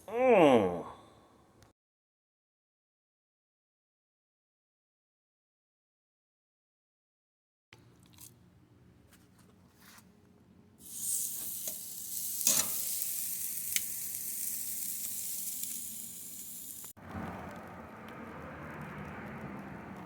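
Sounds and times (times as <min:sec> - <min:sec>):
meat sizzling on a grill: 0:10.8 - 0:17.0.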